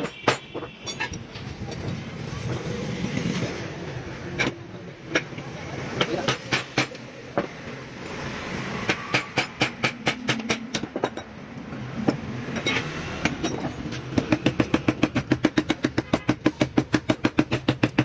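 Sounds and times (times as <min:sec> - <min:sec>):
rapid sharp knocks: 0:08.9 - 0:11.0, 0:14.1 - 0:18.0.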